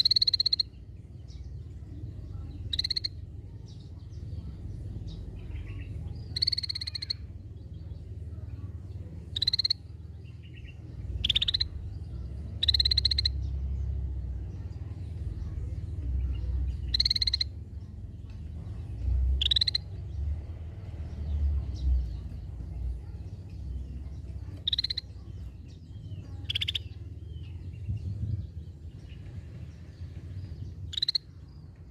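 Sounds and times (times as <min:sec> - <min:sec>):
bird giving buzzy pulsed calls: 0:00.0 - 0:00.8, 0:02.7 - 0:03.2, 0:06.3 - 0:07.3, 0:09.3 - 0:09.9, 0:11.2 - 0:11.8, 0:12.6 - 0:13.5, 0:16.8 - 0:17.6, 0:19.4 - 0:20.0, 0:24.6 - 0:25.0, 0:26.4 - 0:27.0, 0:30.8 - 0:31.3
low rumble: 0:07.1 - 0:31.9.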